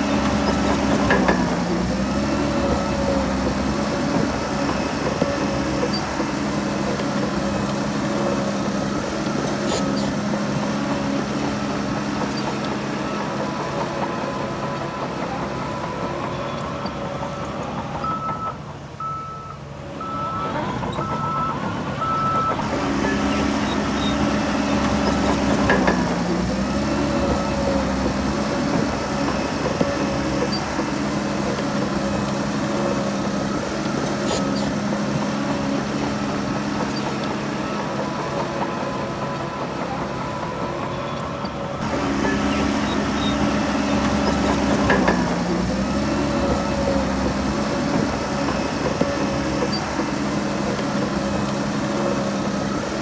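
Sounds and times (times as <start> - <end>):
heavy diesel engine running: 0.0 - 53.0
reversing alarm beeping: 18.0 - 29.3.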